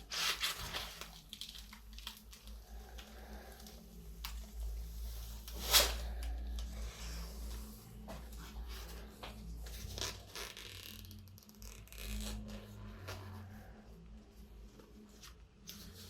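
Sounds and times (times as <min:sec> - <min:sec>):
plastic film rustling: 0:00.0 - 0:13.8.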